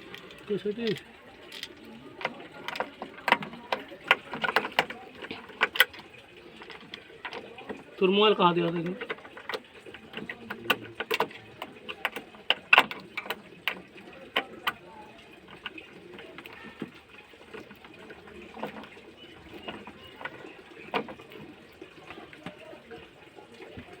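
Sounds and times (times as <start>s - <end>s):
clicks of things being handled: 0.1s - 7.8s.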